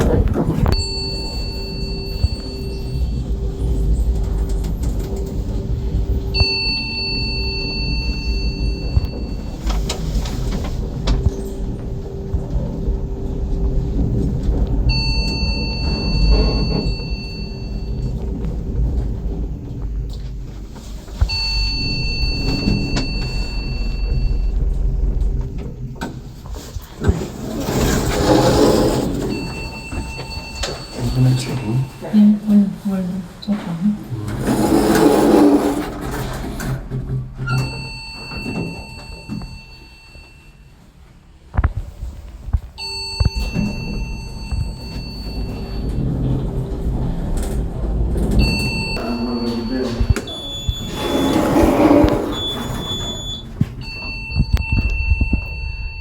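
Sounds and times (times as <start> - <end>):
low steady rumble: 0.0 - 36.9, 41.9 - 56.0
lift chime: 0.6 - 19.7, 21.1 - 26.0, 27.6 - 32.3, 37.5 - 40.8, 42.8 - 56.0
long electronic beeps: 0.8 - 9.8, 14.9 - 18.2, 21.3 - 25.5, 42.8 - 46.1.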